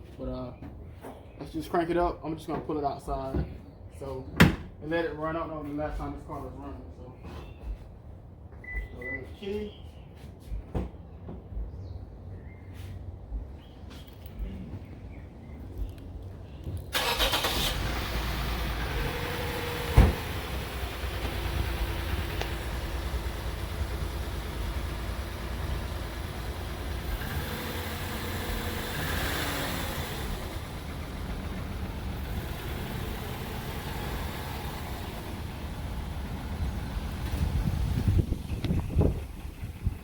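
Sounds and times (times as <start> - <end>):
car engine cranking and idling: 15.8 - 40.0
sharp thump: 19.9 - 20.3.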